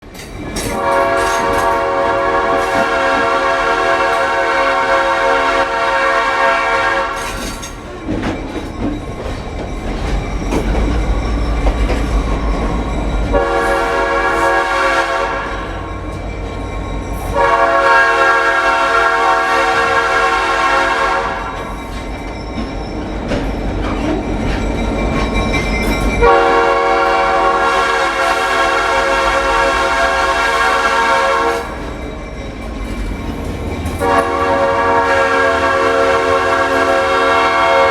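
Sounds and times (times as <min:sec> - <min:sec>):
train rumbling with rail noise: 0:00.0 - 0:37.9
locomotive air horn blasts: 0:00.7 - 0:07.5, 0:13.3 - 0:15.8, 0:17.2 - 0:21.6, 0:26.2 - 0:31.9, 0:34.0 - 0:37.9.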